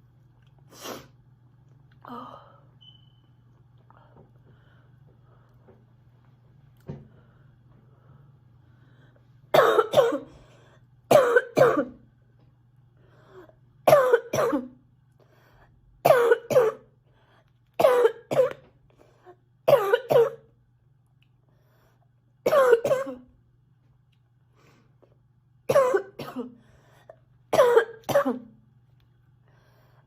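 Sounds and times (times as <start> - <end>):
girl coughing: 9.5 - 10.4, 11.1 - 12.0, 13.9 - 14.8, 16.0 - 16.9, 17.8 - 18.7, 19.7 - 20.5, 22.5 - 23.3, 25.7 - 26.6, 27.5 - 28.5.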